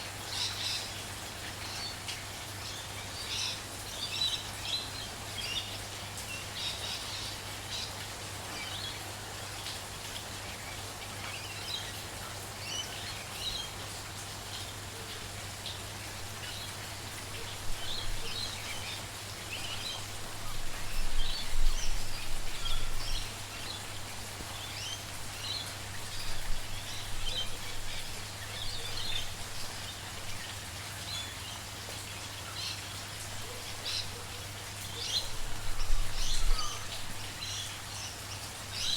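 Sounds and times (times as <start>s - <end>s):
light rain hiss: 0.0s - 38.9s
small birds chirping: 0.2s - 9.8s.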